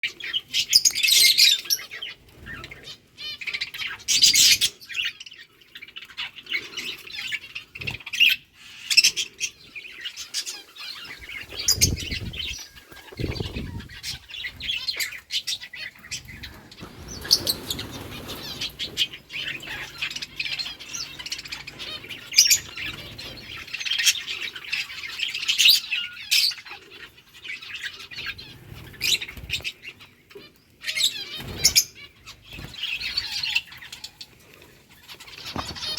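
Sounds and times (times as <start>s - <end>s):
lovebirds chirping and squawking: 0.0s - 35.9s
wing flutters: 10.6s - 15.1s, 16.2s - 20.2s.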